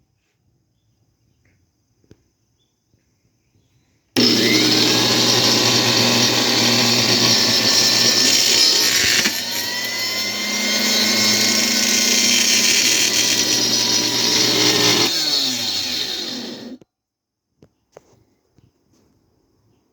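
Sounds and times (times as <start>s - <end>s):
electric pump motor running harshly: 4.2s - 16.8s.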